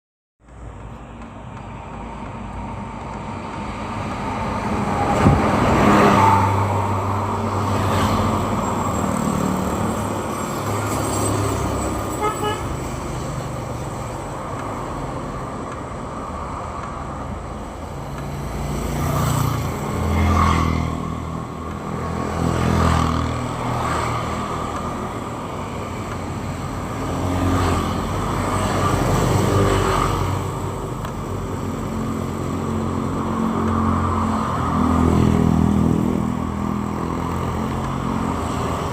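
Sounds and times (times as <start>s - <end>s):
continuous traffic rumble: 0.4s - 38.9s
cars and motorbikes driving past: 0.6s - 38.9s
vehicle horn tooting: 12.1s - 12.8s.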